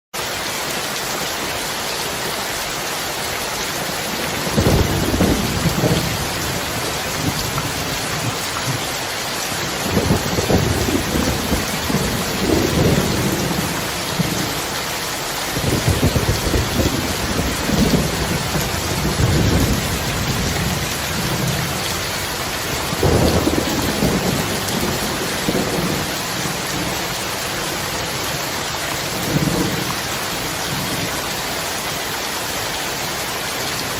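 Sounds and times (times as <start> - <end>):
heavy rain falling: 0.2 - 33.9
thunder rumbling: 4.0 - 27.1, 29.1 - 31.1.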